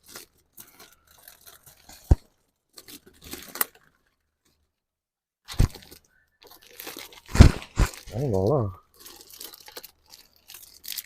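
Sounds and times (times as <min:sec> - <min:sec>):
plastic parts crinkling: 0:00.0 - 0:04.8, 0:05.5 - 0:11.0.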